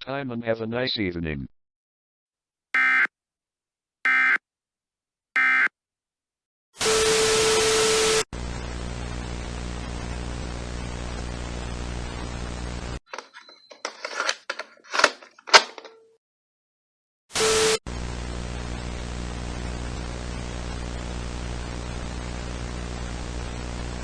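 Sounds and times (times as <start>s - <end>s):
electrical buzzing hum: 2.8s - 3.1s, 5.4s - 5.7s
loud static with low tone: 8.4s - 13.0s, 17.9s - 24.0s.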